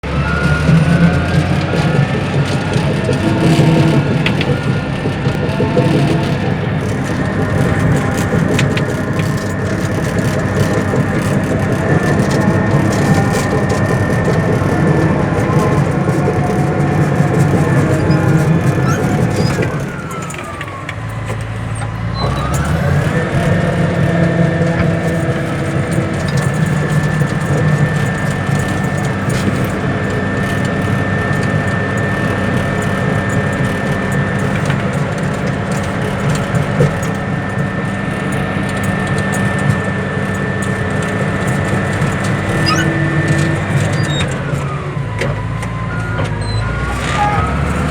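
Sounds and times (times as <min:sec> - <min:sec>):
high whine: 0:00.0 - 0:36.4
bulldozer diesel engine: 0:00.0 - 0:47.9.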